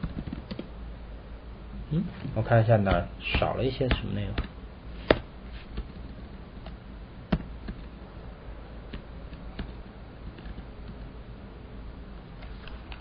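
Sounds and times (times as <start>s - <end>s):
computer keyboard and mouse clicks: 0.0s - 0.7s, 5.1s - 7.9s, 8.9s - 11.1s
low steady hum: 0.0s - 13.0s.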